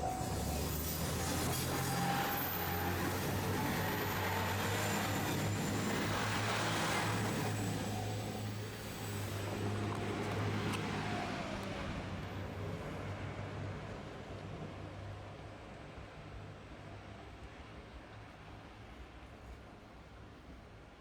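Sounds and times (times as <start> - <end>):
engine humming with rushing noise: 0.0 - 14.8.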